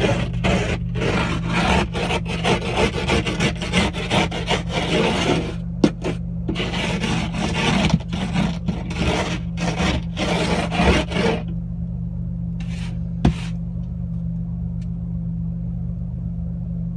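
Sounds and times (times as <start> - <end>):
rough scraping strokes: 0.0 - 11.5, 12.6 - 13.6
low hum: 0.0 - 16.9.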